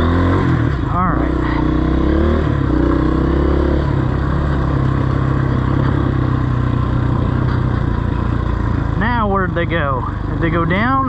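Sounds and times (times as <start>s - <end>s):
dirt bike engine running: 0.0s - 11.0s.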